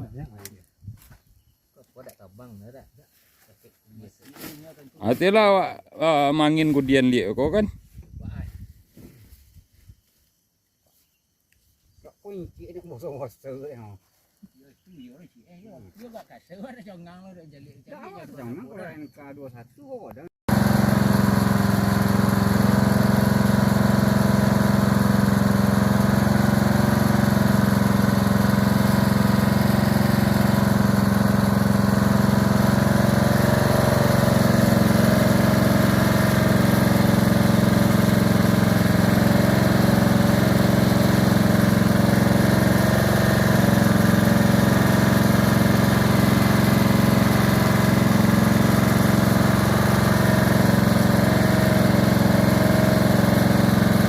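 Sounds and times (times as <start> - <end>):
corn-shelling machine engine running: 4.0 - 7.7, 20.5 - 54.0.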